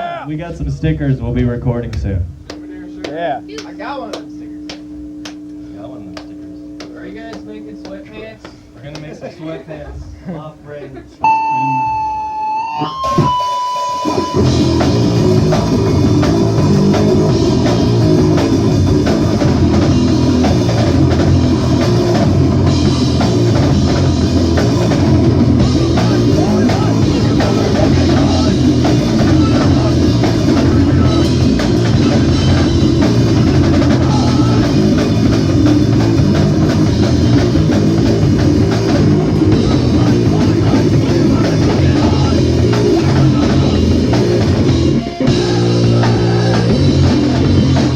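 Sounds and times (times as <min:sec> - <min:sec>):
rock band playing live: 0:11.2 - 0:47.9.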